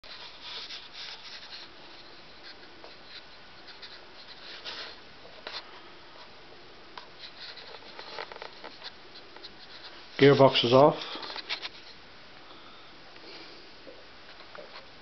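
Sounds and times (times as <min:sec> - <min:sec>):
scratchy rubbing and handling: 0:00.0 - 0:06.3, 0:07.0 - 0:12.0.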